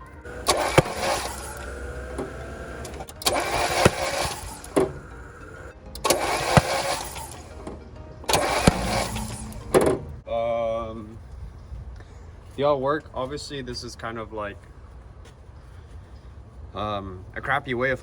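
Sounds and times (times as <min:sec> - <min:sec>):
starter cranking engine: 0:00.0 - 0:10.2.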